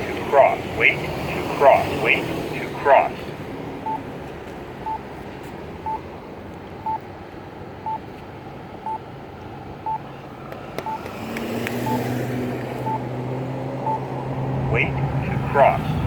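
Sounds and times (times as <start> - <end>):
traffic noise: 0.0 - 16.0
vehicle engine hum: 0.0 - 16.0
short locator beeps: 3.8 - 4.0, 4.8 - 5.0, 5.8 - 6.0, 7.8 - 8.0, 9.8 - 10.0, 11.8 - 12.1, 12.8 - 13.1, 13.8 - 14.1.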